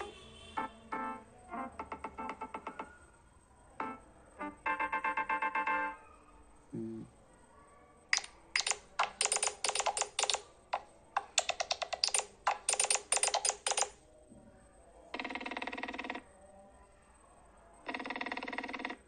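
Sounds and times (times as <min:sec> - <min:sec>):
short sharp clicking tones: 0:08.2 - 0:14.0.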